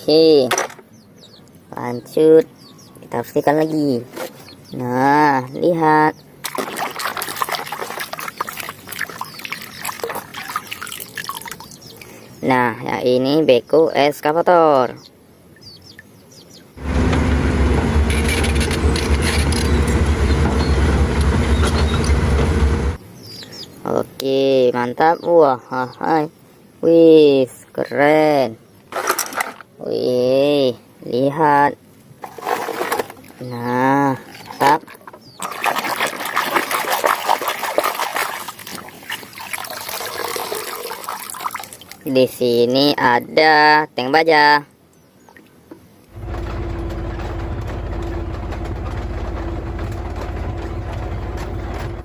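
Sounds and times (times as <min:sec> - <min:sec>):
running water splashing: 0:06.4 - 0:12.1, 0:34.2 - 0:42.1
cleaning machine humming: 0:16.8 - 0:23.0, 0:46.2 - 0:52.0.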